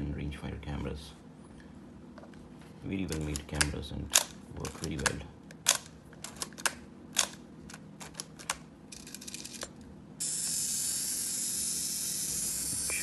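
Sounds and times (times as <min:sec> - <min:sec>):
steady hiss: 0:10.2 - 0:13.0.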